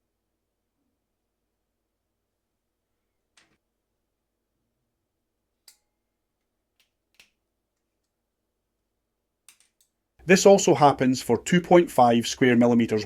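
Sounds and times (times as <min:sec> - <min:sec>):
wire-stripping pliers clicking: 0:05.6 - 0:05.9, 0:09.5 - 0:10.0.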